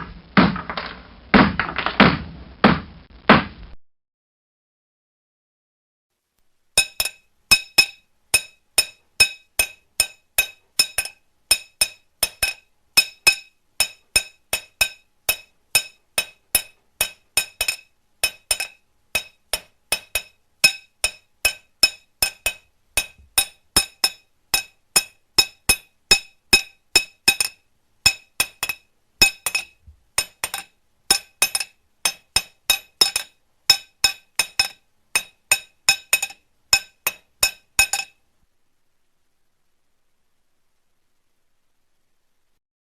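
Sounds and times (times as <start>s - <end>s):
hammer striking metal: 6.8s - 38.2s.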